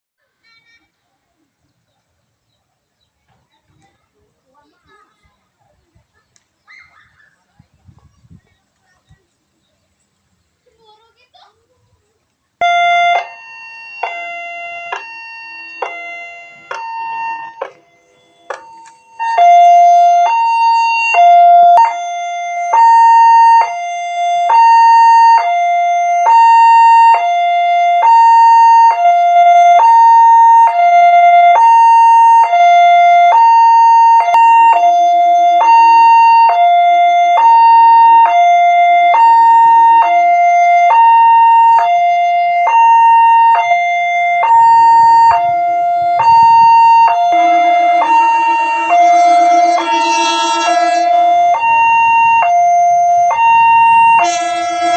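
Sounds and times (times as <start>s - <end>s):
two-tone crossing warning siren: 12.6s - 54.9s.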